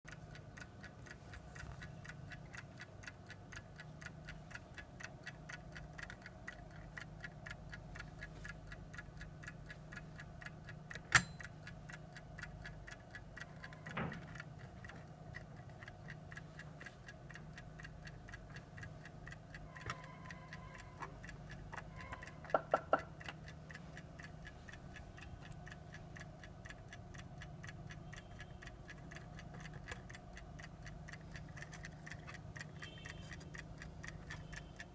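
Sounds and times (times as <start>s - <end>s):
clock ticking rapidly: 0.1s - 34.9s
sharp click: 11.0s - 11.5s.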